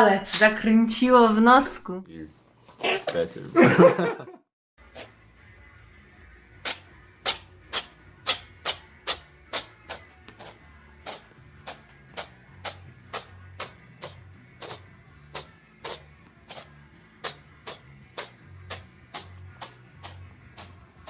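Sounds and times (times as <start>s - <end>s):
background music with steady beat: 4.8s - 21.0s.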